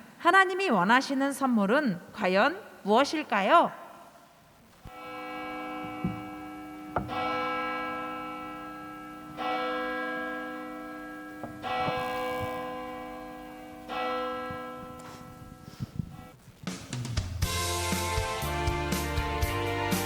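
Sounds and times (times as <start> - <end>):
church bell tolling: 4.9 - 16.2.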